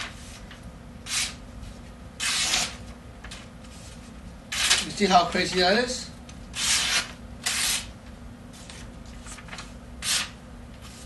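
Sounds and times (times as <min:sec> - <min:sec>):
knife slicing paper: 0:10.0 - 0:11.0.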